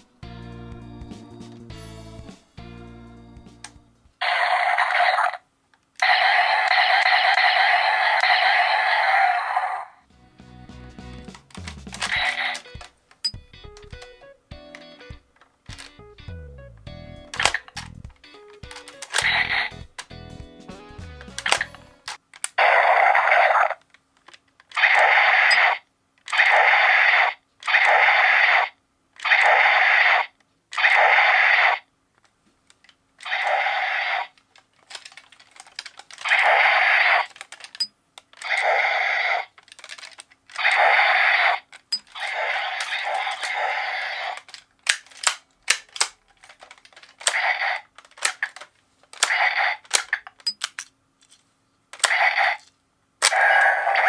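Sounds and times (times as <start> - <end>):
toy electronic sound effects: 4.2 - 5.4, 6.0 - 10.0, 11.6 - 14.3, 17.3 - 20.1, 21.3 - 23.8, 24.7 - 31.8, 33.2 - 35.2, 36.0 - 48.6, 53.3 - 54.0
plastic trigger clicks: 11.3 - 16.0, 17.3 - 20.1, 21.2 - 22.6, 32.2 - 54.0.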